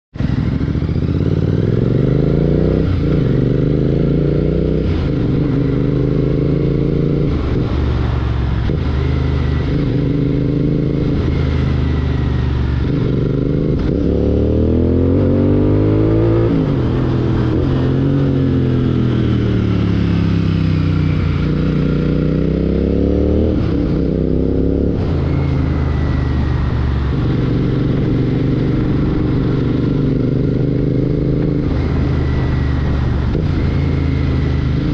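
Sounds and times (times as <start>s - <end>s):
motorcycle engine revving: 0.1s - 34.9s.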